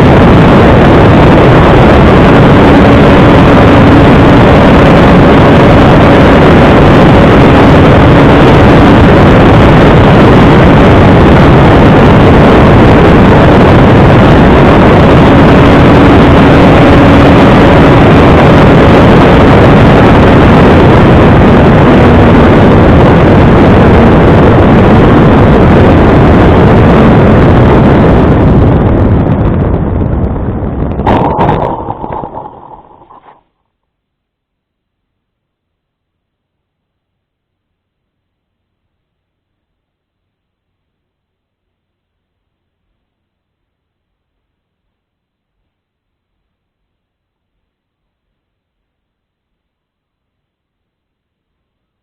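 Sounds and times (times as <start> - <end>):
wind rush: 0.0 - 33.4.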